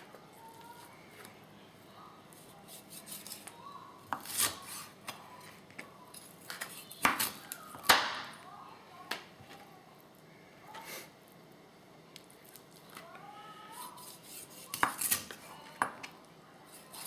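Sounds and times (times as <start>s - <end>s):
knife scraping cut: 4.1s - 4.9s, 13.8s - 15.4s.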